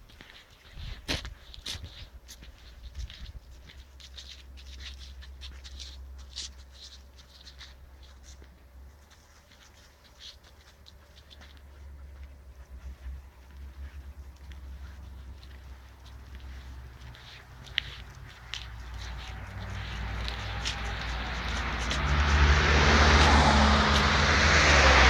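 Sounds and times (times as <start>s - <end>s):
rustling in dry undergrowth: 0.0s - 25.0s
steady low rumble: 11.5s - 25.0s.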